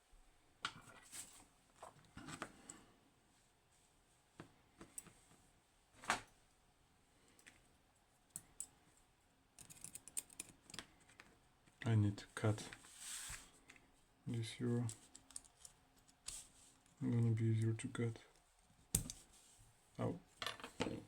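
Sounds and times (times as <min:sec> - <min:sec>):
small metal tools clicking: 0:09.6 - 0:10.8.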